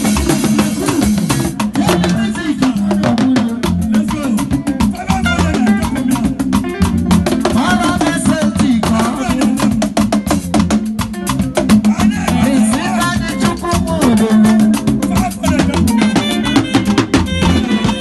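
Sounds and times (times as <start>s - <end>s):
person singing: 0.0s - 6.7s, 7.3s - 10.0s, 11.8s - 16.6s
fast percussion: 0.0s - 18.0s
guitar: 0.0s - 18.0s
salsa music: 0.0s - 18.0s.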